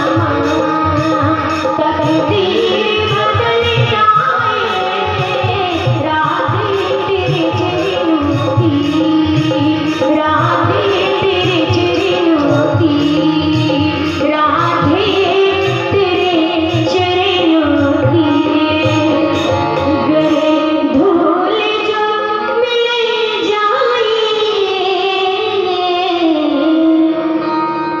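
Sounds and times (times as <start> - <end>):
hand drum rhythm: 0.0 - 20.8
devotional song melody: 0.0 - 28.0.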